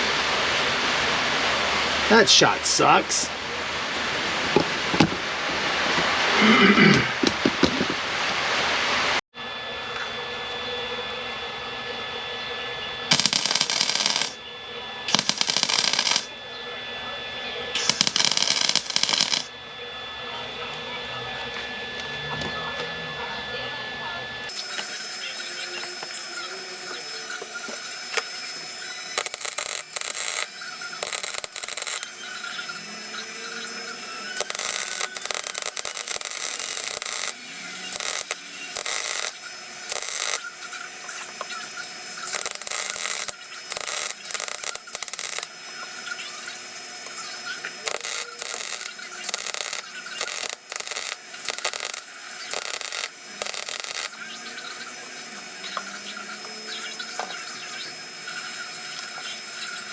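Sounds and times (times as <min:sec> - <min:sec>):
steady welder hum: 0:12.1 - 0:16.5, 0:17.6 - 0:19.7, 0:24.5 - 0:59.9
welder crackling: 0:13.1 - 0:14.4, 0:15.1 - 0:16.3, 0:17.8 - 0:19.5, 0:24.5 - 0:54.9.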